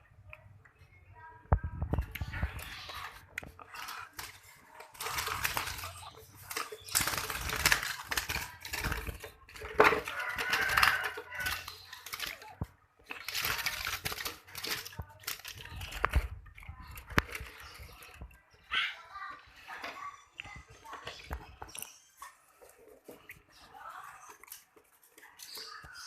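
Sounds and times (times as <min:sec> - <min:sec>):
bird flapping wings: 0:03.8 - 0:18.2.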